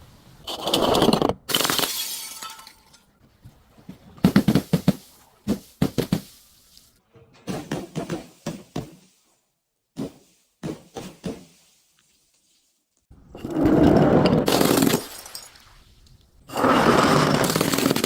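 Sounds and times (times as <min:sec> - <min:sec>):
broken glass crunching: 0:01.5 - 0:03.1
glass bottle shattering: 0:01.5 - 0:03.1, 0:14.5 - 0:15.7.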